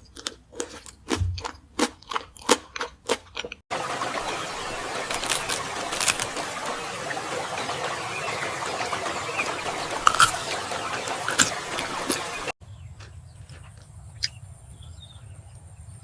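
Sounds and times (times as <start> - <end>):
chewing clicks and smacks: 0.0 - 3.6, 10.0 - 12.2, 13.0 - 14.4.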